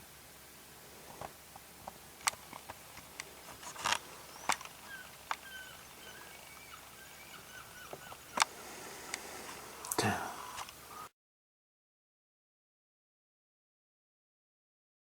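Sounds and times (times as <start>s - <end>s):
faint bird chirps: 4.0s - 8.4s.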